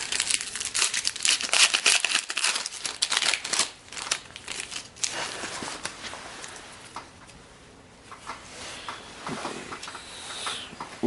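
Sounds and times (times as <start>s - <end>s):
card pack wrapper crinkling: 0.0s - 6.0s.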